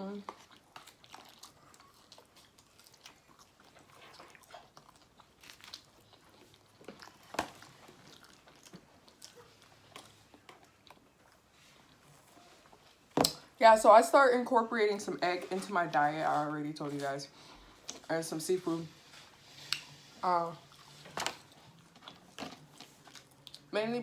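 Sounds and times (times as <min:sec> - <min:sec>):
chewing food: 0:00.2 - 0:13.6, 0:15.2 - 0:23.8.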